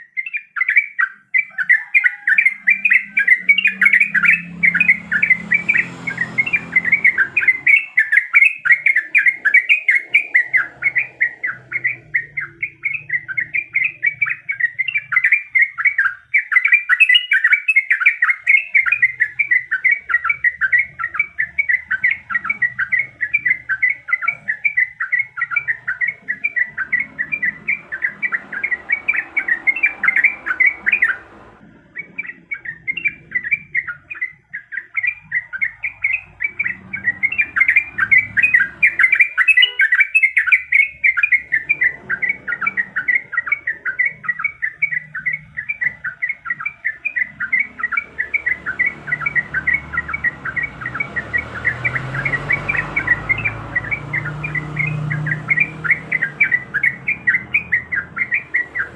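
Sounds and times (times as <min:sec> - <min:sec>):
bulbul singing rapid chirps: 0:00.0 - 0:58.9.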